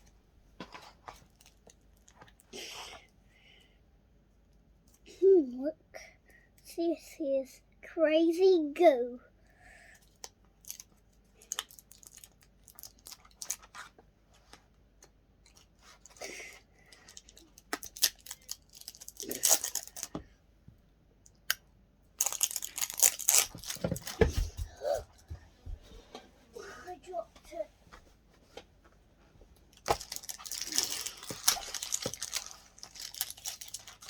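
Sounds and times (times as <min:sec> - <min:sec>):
plastic packaging tearing and crinkling: 0:11.4 - 0:13.8, 0:17.3 - 0:20.1, 0:22.2 - 0:24.3, 0:29.8 - 0:34.0.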